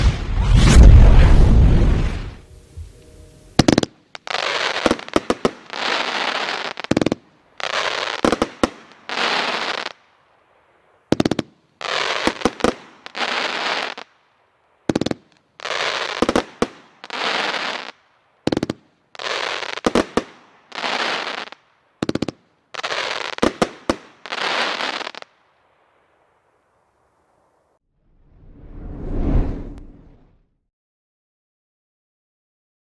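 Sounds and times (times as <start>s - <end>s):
firework cake firing crackling bursts: 0.0s - 10.1s, 10.9s - 14.2s, 14.8s - 25.9s.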